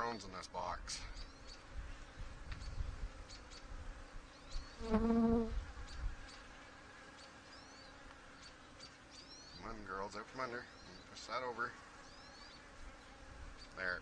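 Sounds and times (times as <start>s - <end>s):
bees buzzing: 1.1s - 14.0s
bee flying past microphone: 1.7s - 8.5s.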